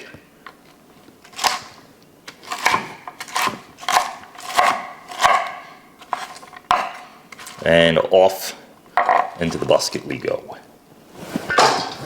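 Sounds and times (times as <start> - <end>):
knife slicing cabbage: 1.3 - 7.6.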